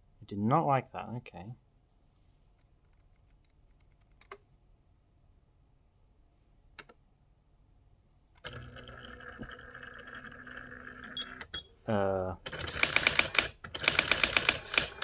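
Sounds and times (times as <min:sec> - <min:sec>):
typewriter mechanism whirring: 0:12.5 - 0:15.0.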